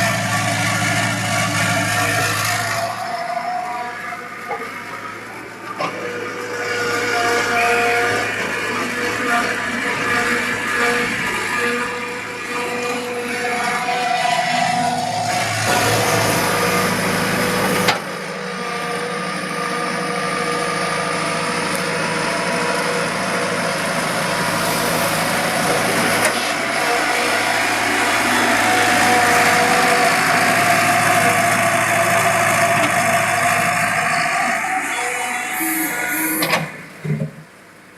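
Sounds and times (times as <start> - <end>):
diesel engine running: 0.0 - 37.9.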